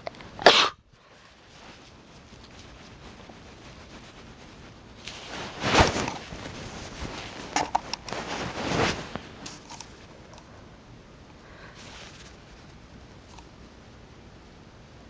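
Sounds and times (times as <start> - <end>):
person sneezing: 0.4 - 0.8.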